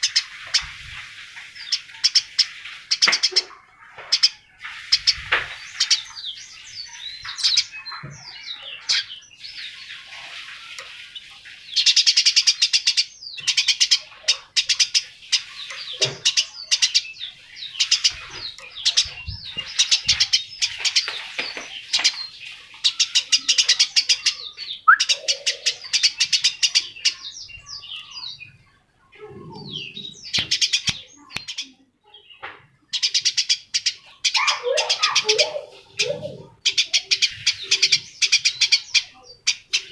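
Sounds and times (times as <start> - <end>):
birds chirping in trills: 0.0 - 39.9
soft low bird calls: 11.8 - 31.8, 32.9 - 39.9.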